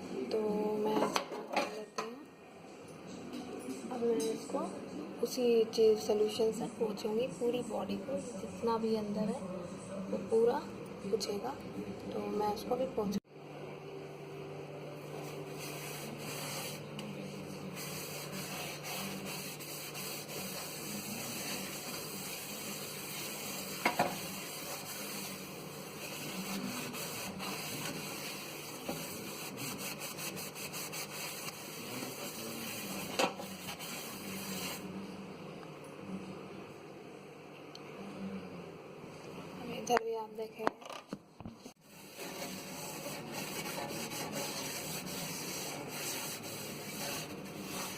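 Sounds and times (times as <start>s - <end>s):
cloth scrubbing a surface: 15.1s - 16.9s, 17.6s - 34.9s, 41.8s - 47.9s.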